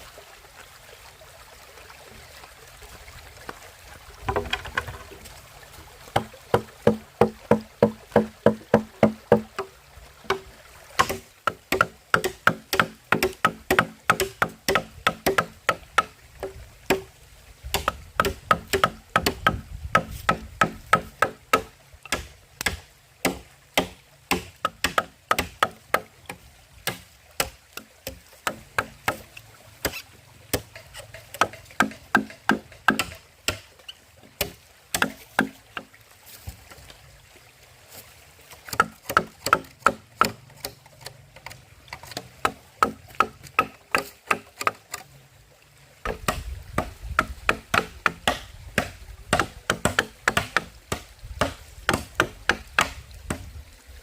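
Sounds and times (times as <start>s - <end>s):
blade chopping wood: 4.3s - 5.0s, 10.3s - 17.1s, 17.7s - 29.2s, 29.8s - 33.7s, 34.4s - 35.6s, 38.7s - 40.8s, 46.0s - 53.5s.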